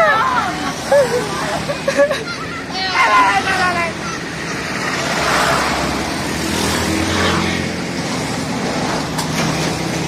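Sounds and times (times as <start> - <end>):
vehicle passing by: 2.9 - 10.0.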